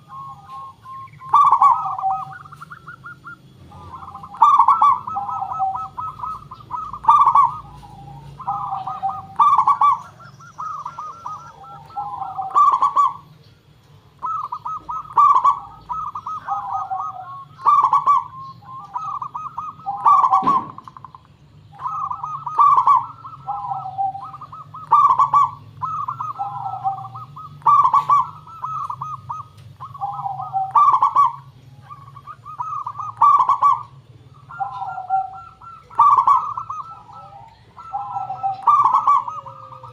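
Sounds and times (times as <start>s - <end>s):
dove cooing: 0.0s - 39.9s
steady low hum: 0.0s - 39.9s.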